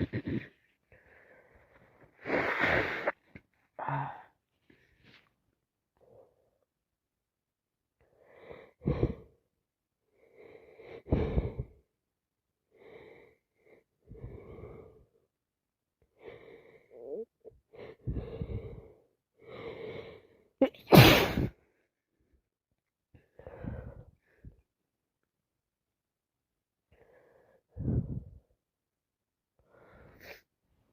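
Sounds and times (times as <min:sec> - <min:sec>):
loud sneeze: 0:20.6 - 0:21.5.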